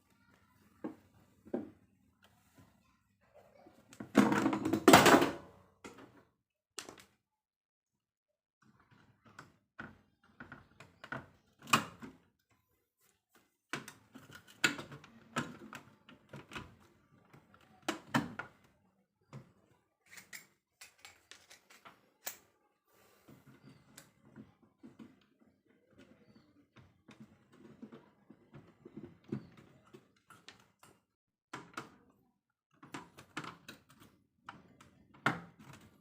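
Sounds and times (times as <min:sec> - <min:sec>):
clicks and knocks of tools: 0:20.0 - 0:22.5.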